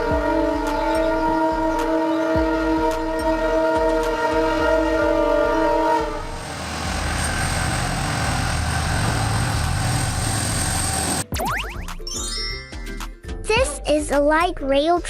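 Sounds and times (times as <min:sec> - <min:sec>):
train horn chord: 0:00.0 - 0:10.2
train rumbling on rails: 0:00.0 - 0:11.2
thin high whine: 0:06.3 - 0:11.2.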